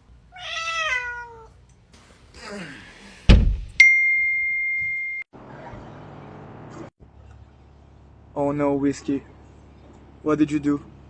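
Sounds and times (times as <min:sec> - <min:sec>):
cat meowing: 0:00.3 - 0:01.6
loud thump: 0:03.3 - 0:03.8.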